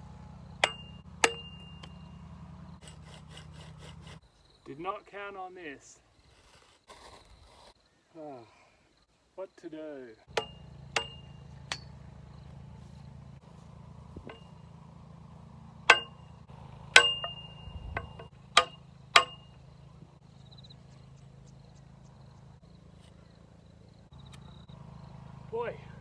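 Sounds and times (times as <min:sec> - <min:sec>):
steady low hum: 0:00.0 - 0:04.6, 0:10.2 - 0:26.0
metal clangs: 0:00.6 - 0:02.1, 0:10.3 - 0:12.0, 0:14.2 - 0:14.6, 0:15.9 - 0:16.4, 0:17.0 - 0:19.7
light metal knocks: 0:14.2 - 0:14.6, 0:15.9 - 0:16.2, 0:17.0 - 0:19.6.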